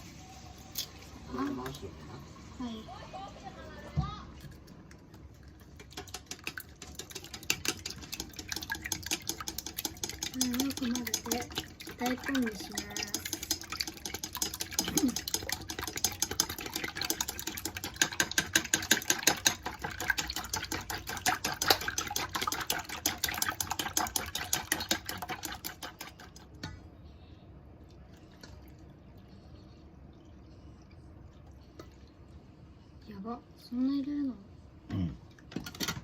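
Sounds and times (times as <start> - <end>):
utensil clicking against bowl: 5.8 - 11.7.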